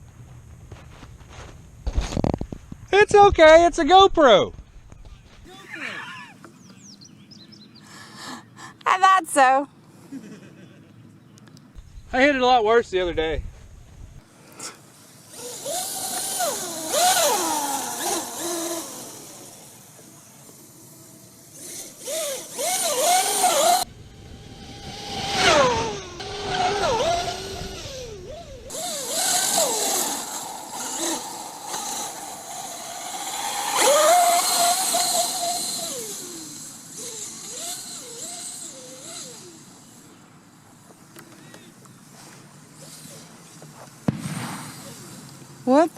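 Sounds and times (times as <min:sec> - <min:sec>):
steady hiss: 0:11.8 - 0:23.9, 0:28.7 - 0:45.9
electric motor whining: 0:15.3 - 0:40.2.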